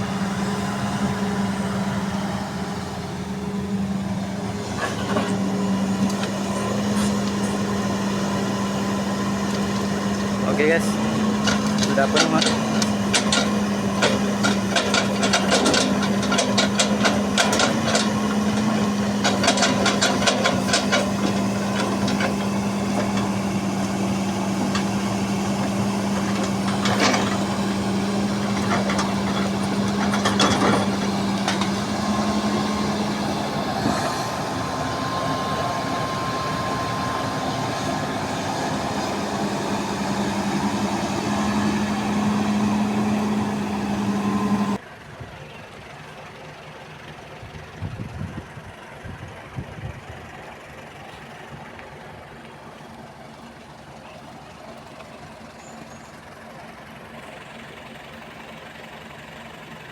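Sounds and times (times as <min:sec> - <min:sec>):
diesel engine running: 0:00.0 - 0:59.9
sharp knocks and rattles: 0:09.5 - 0:33.1.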